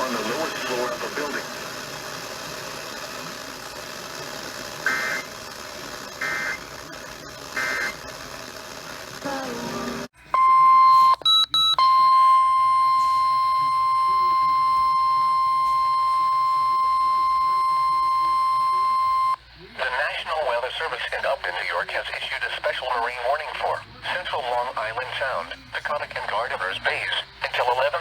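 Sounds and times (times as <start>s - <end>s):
radio hiss: 0.0s - 10.1s, 19.4s - 28.0s
steady warning alarm tone: 4.9s - 5.3s, 10.4s - 19.4s
screechy data bursts: 6.2s - 6.8s, 7.5s - 8.2s.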